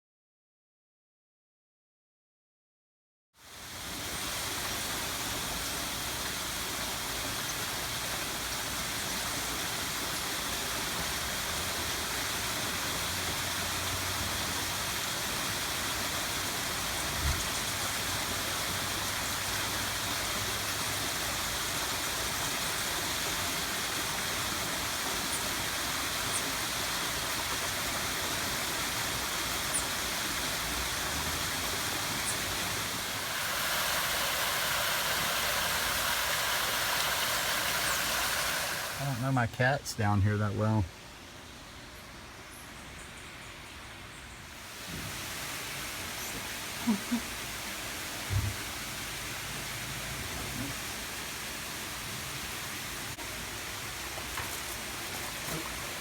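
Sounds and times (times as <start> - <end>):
waterfall roaring: 3.6 - 40.8.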